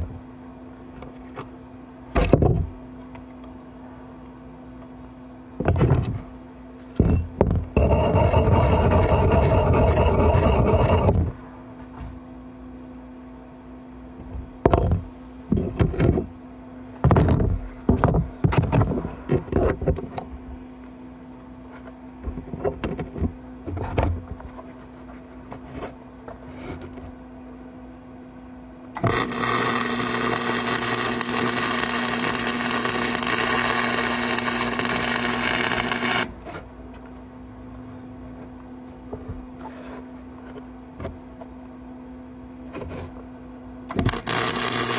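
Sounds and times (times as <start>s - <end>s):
steady low hum: 0.0s - 44.9s
welding arc crackling: 7.8s - 11.1s, 29.0s - 36.4s, 44.0s - 44.9s.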